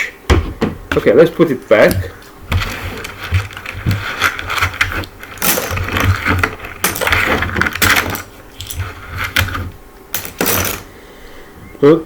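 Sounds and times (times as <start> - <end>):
puzzle pieces clattering: 1.9 - 10.9.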